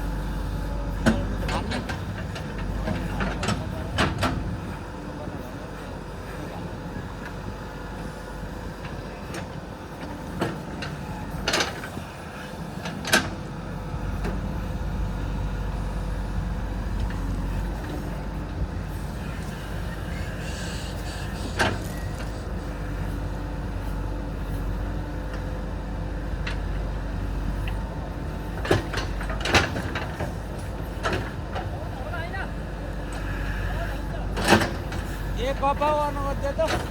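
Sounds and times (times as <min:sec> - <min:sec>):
diesel engine running under load: 0:00.0 - 0:36.9.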